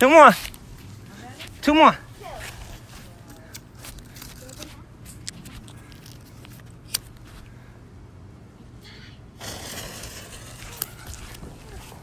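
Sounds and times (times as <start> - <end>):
firework crack: 9.4 - 12.0
firework hissing rush: 9.4 - 12.0.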